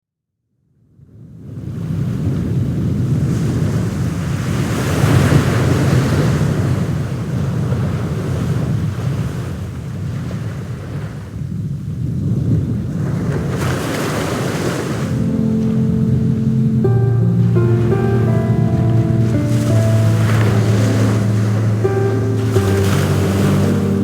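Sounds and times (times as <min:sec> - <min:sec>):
wind on microphone: 0:01.2 - 0:24.0
sea waves: 0:13.0 - 0:24.0.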